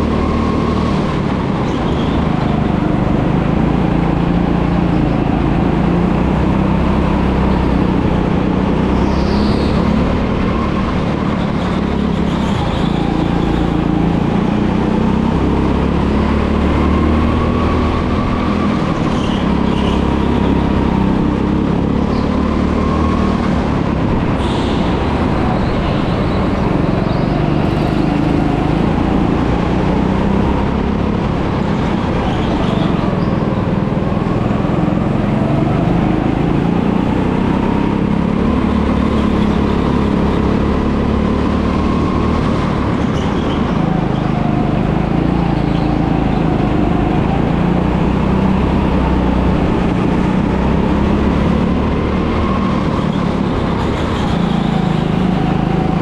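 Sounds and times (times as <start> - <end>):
go-kart engine revving: 0.0 - 56.0.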